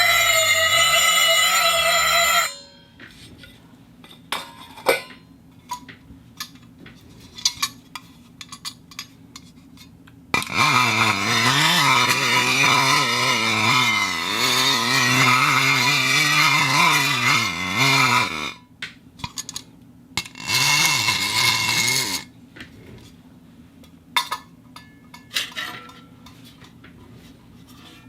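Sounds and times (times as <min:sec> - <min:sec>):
metallic squeal of rubbing steel: 0:00.0 - 0:02.7, 0:10.4 - 0:18.6.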